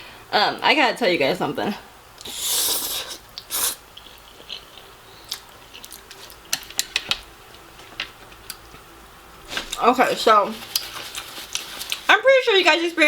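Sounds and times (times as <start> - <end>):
wet mouth clicks: 2.2 - 4.7
person chewing noodles: 2.2 - 6.7.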